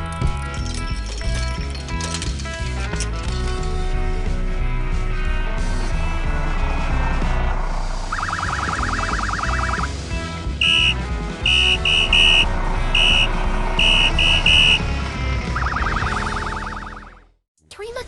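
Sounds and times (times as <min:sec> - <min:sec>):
fast warbling tone: 0:08.1 - 0:09.9, 0:15.5 - 0:17.3
short high electronic beeps: 0:08.1 - 0:09.9, 0:10.6 - 0:14.8
cartoon background music: 0:08.1 - 0:18.0.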